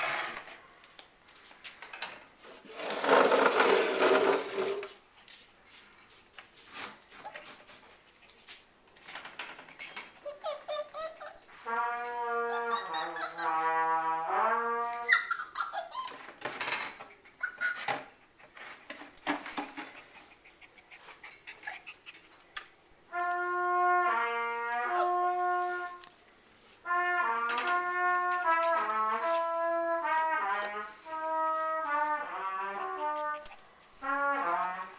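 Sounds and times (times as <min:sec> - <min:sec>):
trumpet playing notes: 0:11.5 - 0:15.3, 0:23.0 - 0:34.9
clicks and scuffling: 0:27.5 - 0:34.9.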